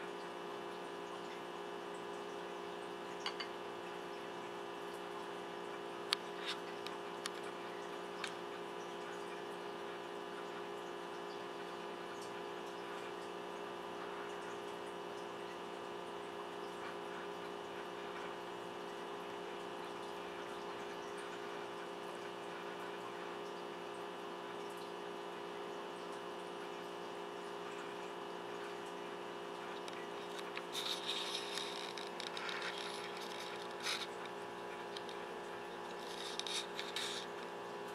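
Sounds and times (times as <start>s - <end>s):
steady mechanical hum: 0.0s - 37.9s
ice cube scraping on hard surface: 30.2s - 34.2s, 35.9s - 37.4s.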